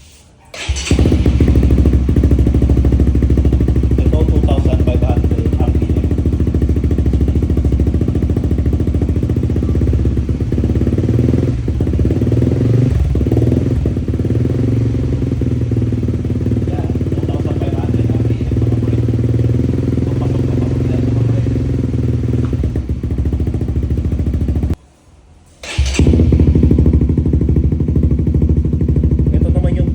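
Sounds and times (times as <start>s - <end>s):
motorcycle engine running: 0.6s - 24.8s, 25.6s - 29.9s.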